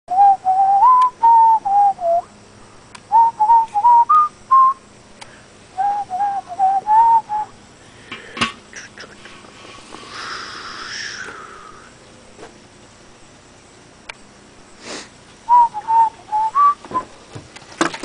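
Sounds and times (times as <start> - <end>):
person whistling a tune: 0.1 - 2.3, 3.1 - 4.8, 5.8 - 7.5, 15.5 - 17.1.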